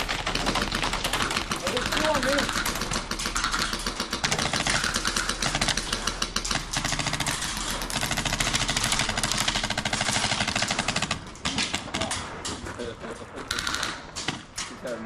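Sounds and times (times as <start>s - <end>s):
airsoft guns firing full auto: 0.0s - 12.2s.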